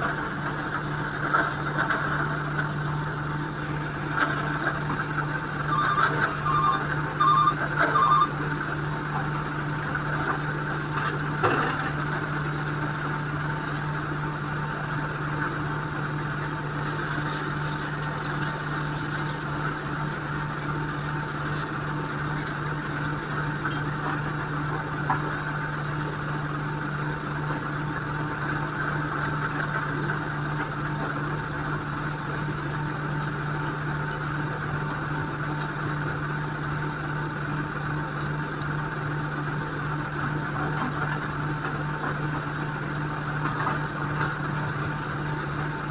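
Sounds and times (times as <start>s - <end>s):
diesel engine running: 0.0s - 45.9s
short beeps: 5.7s - 8.4s.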